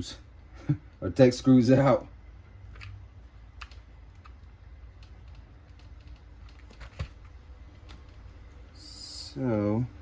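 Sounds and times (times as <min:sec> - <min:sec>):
small parts clicking on plastic: 0:02.7 - 0:08.2.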